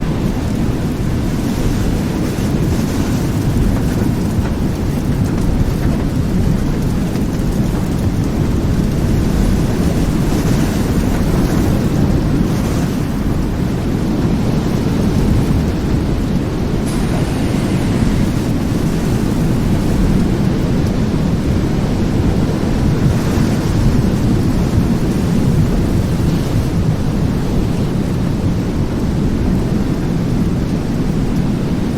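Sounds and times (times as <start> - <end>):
low thunder rumble: 0.0 - 31.3
heavy rain hissing: 15.0 - 23.2.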